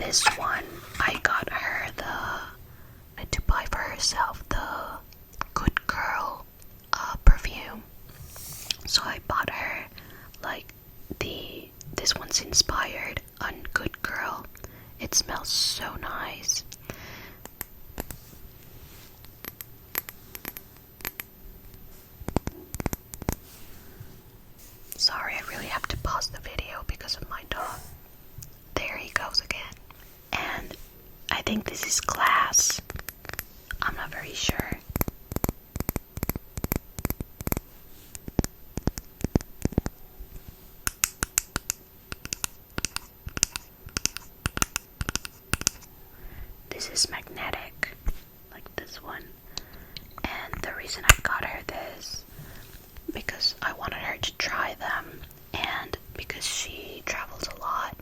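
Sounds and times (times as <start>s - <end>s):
sharp clicks and taps: 22.2s - 23.4s, 34.5s - 40.0s, 40.8s - 45.8s.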